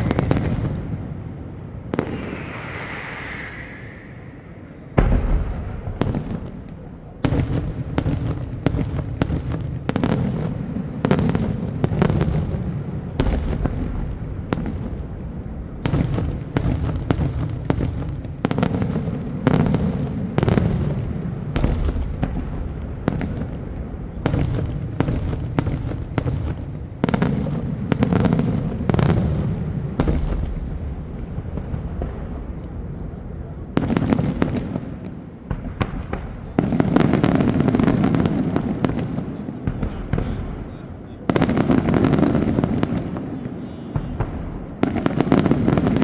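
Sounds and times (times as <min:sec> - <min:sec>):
low rumble: 0:02.0 - 0:06.1.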